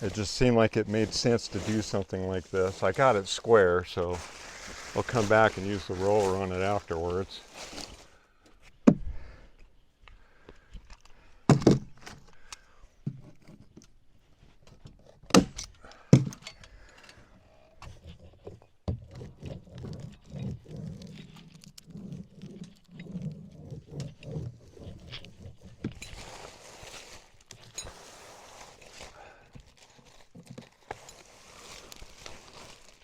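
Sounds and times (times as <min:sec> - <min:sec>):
hissing rustle: 0:00.0 - 0:08.2.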